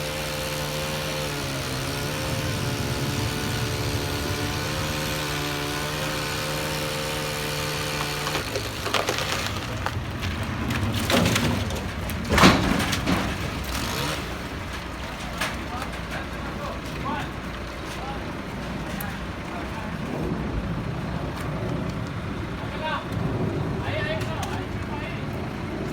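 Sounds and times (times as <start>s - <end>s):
wood cracking and snapping: 0.0s - 17.8s
engine running steadily: 0.0s - 25.9s.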